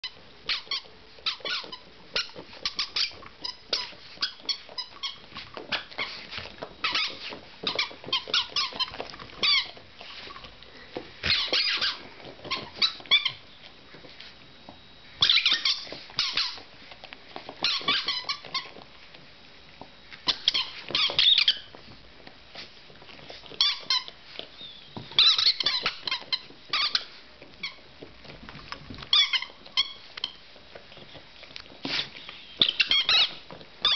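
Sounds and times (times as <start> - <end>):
squeaky toy squeaking: 0.5 - 6.1, 6.8 - 9.8, 11.2 - 13.4, 15.2 - 16.6, 17.6 - 18.7, 20.3 - 21.7, 25.1 - 27.1, 29.1 - 30.4, 32.6 - 33.9.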